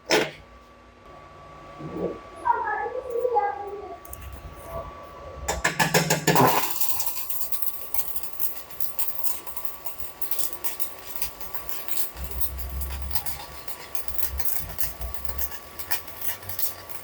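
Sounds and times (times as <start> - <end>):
welding arc crackling: 5.5 - 17.0.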